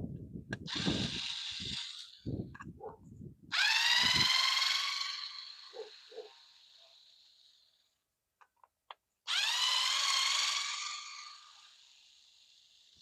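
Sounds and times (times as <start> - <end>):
cordless screwdriver motor whirring: 0.5 - 2.8, 3.5 - 7.7, 9.3 - 13.0.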